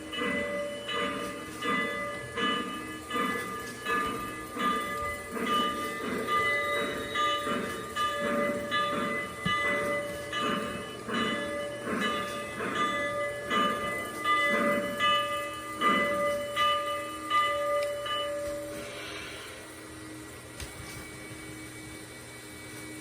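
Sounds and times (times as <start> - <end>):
steady steam hiss: 0.0 - 17.6, 18.3 - 23.0
steam locomotive chuffing: 0.0 - 23.0.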